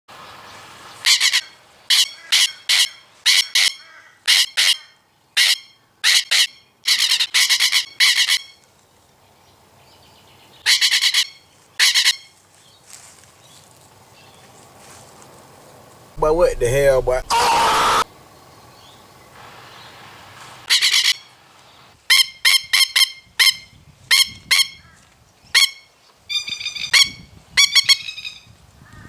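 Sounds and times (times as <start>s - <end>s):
bird squawking harshly: 1.1s - 8.5s, 17.0s - 18.0s.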